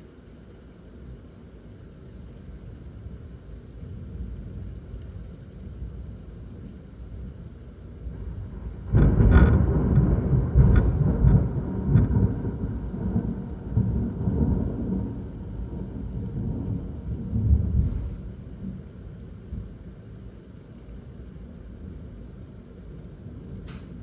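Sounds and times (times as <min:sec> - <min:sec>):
thunder clap and rumble: 0:08.0 - 0:20.3.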